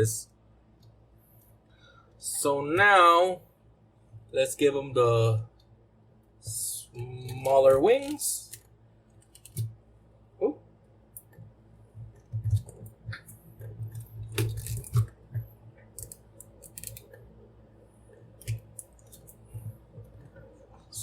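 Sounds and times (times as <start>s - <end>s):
plastic toy parts clicking: 9.2s - 9.7s, 16.0s - 17.2s.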